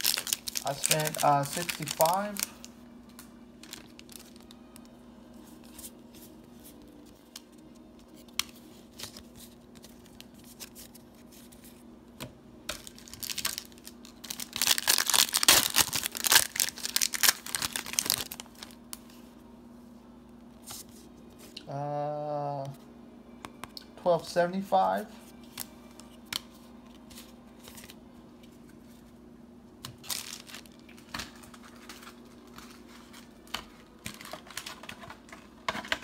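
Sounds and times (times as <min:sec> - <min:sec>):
foil pack tearing and crinkling: 0:00.0 - 0:02.6, 0:03.6 - 0:04.6, 0:12.7 - 0:18.8, 0:29.9 - 0:33.3.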